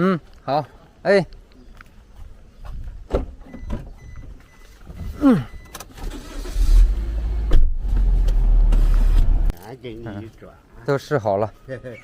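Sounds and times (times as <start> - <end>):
car engine rumbling: 3.2 - 9.6.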